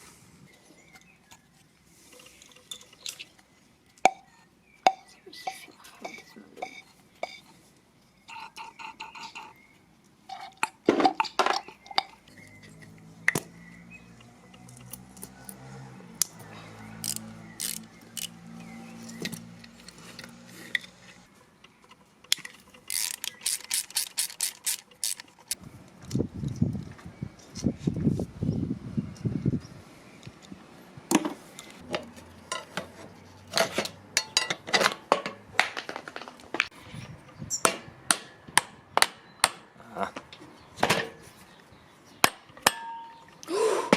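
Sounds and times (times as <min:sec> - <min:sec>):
metal tools clinking and rattling: 0:33.5 - 0:35.4.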